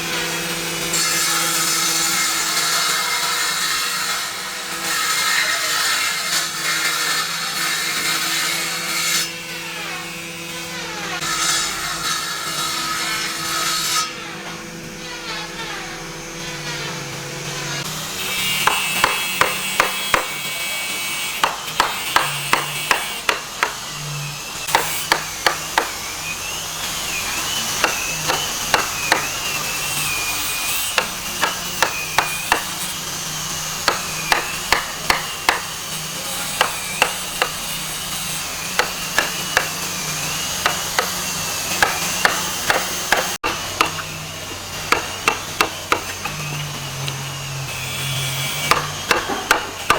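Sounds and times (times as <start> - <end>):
hammer striking wood: 18.2 - 20.5, 21.4 - 23.8, 24.6 - 26.0, 27.8 - 29.4, 31.0 - 32.9, 33.8 - 35.7, 36.5 - 37.6, 38.7 - 39.8, 40.6 - 44.1, 44.9 - 47.2, 48.6 - 49.9.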